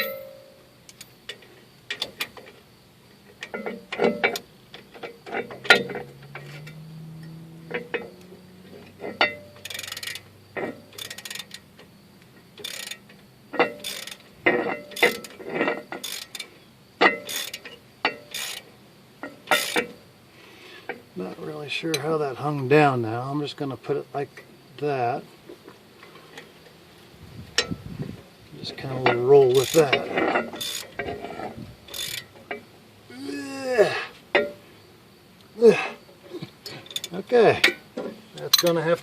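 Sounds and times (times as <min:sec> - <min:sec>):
light metal clatter: 0:00.0 - 0:20.0, 0:27.4 - 0:32.7, 0:34.3 - 0:34.8, 0:36.2 - 0:39.0
ratchet wrench clicking: 0:09.1 - 0:10.3, 0:10.9 - 0:11.7, 0:12.6 - 0:18.7, 0:19.4 - 0:19.9, 0:29.0 - 0:32.6, 0:36.8 - 0:37.8.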